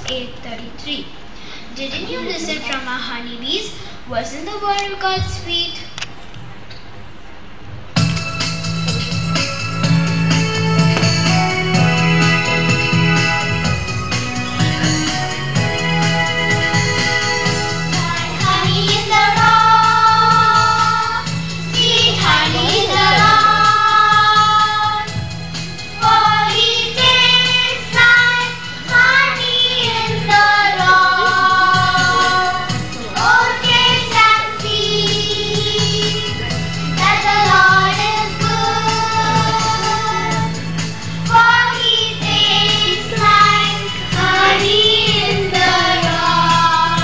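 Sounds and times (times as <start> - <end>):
electronic keyboard accompaniment: 8.0 - 47.0
high voices singing: 14.6 - 47.0.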